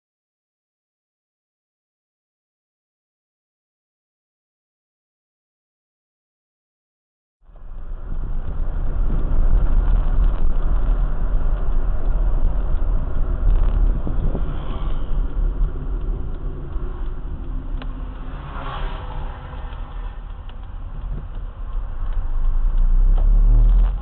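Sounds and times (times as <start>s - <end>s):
loud low rumble: 7.5s - 24.0s
noisy haze: 7.5s - 24.0s.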